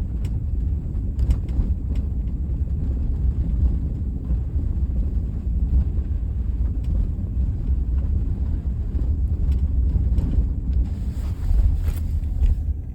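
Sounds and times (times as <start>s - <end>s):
car rumbling on bumpy road: 0.0s - 12.9s.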